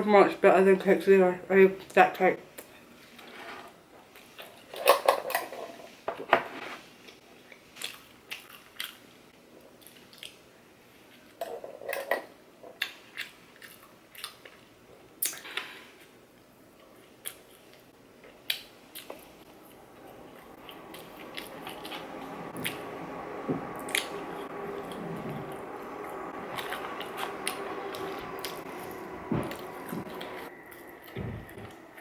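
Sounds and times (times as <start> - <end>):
person chewing and biting food: 26.4 - 32.0.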